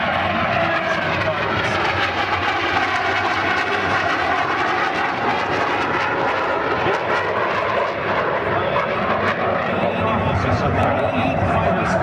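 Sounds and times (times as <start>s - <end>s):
jet engines in flight: 0.0s - 12.0s.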